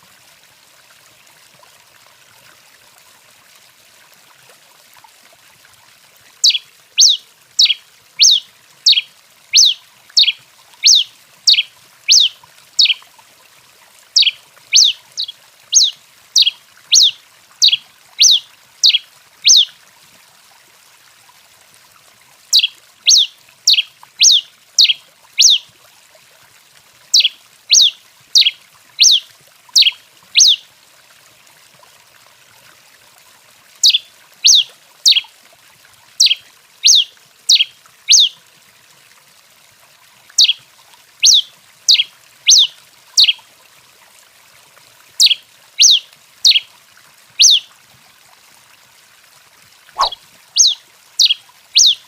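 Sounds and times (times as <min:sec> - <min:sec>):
faint steady hiss: 0:00.0 - 0:52.0
finch calling high notes: 0:09.6 - 0:13.0, 0:50.0 - 0:52.0.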